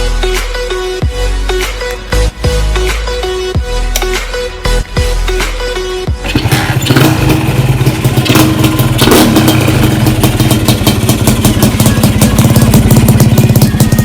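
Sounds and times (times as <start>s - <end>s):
two-stroke motorcycle engine: 6.2s - 14.0s.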